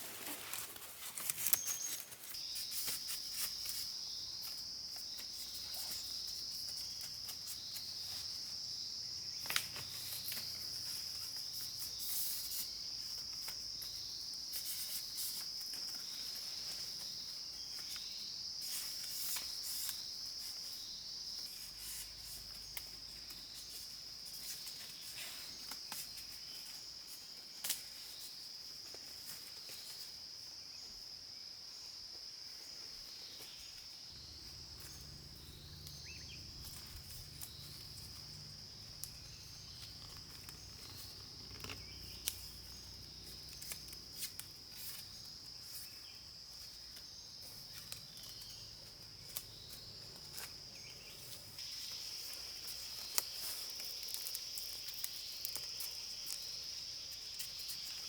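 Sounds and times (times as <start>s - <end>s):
insects chorus: 0.0s - 58.0s
light crackles: 34.4s - 45.1s.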